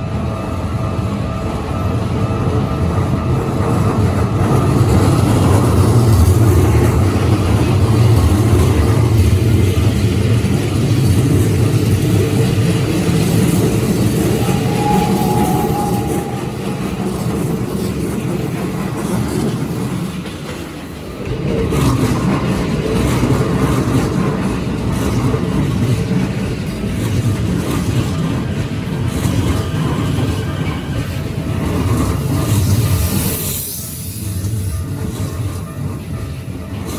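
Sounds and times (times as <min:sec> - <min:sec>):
train wheels rumbling on rails: 0:00.0 - 0:36.9
short high tone: 0:14.0 - 0:18.2.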